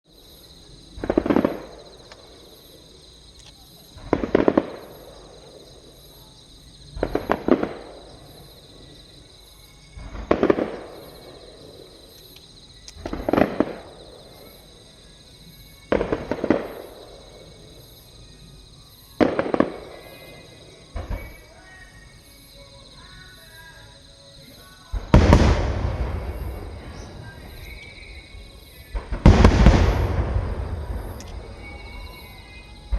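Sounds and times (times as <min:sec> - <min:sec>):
fireworks bangs and crackle: 0:01.0 - 0:02.5, 0:04.0 - 0:06.0, 0:07.0 - 0:08.8, 0:10.0 - 0:11.9, 0:13.0 - 0:14.5, 0:15.9 - 0:17.7, 0:19.2 - 0:21.5, 0:24.9 - 0:32.9.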